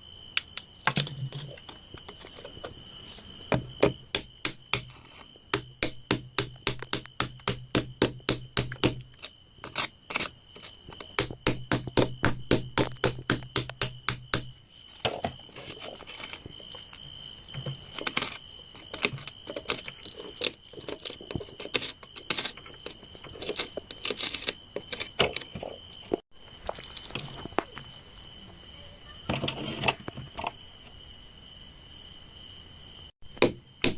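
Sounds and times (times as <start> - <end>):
hand tools scraping soil and rock: 1.0 - 3.8, 4.6 - 5.7, 8.8 - 13.8, 14.7 - 28.3, 29.2 - 30.6.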